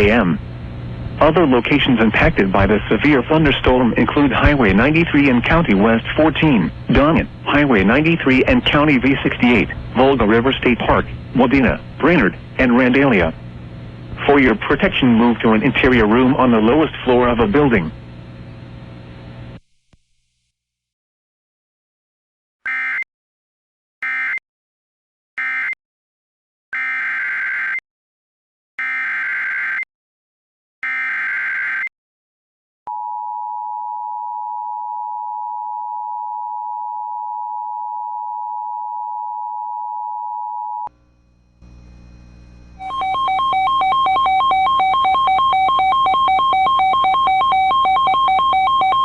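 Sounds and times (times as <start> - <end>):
repeating electronic tone pattern: 42.8 - 49.0
two-tone attention signal: 42.8 - 49.0.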